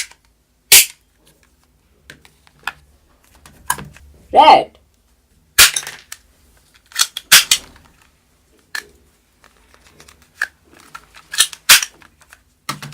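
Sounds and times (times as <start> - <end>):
plastic toy gun clicks and knocks: 9.9 - 12.9.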